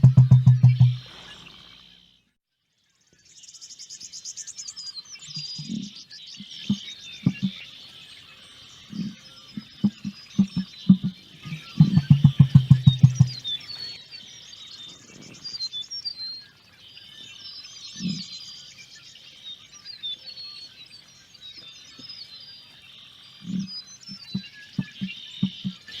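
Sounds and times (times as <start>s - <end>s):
emu drumming note: 0.0s - 1.2s, 6.7s - 7.6s, 9.6s - 13.4s
small birds chirping: 0.0s - 26.0s.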